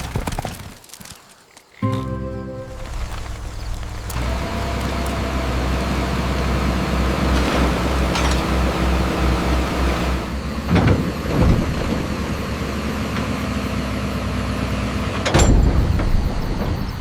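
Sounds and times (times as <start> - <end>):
heavy machinery engine running: 1.8 - 17.0
loud clanking knocks: 2.7 - 13.7, 14.9 - 17.0.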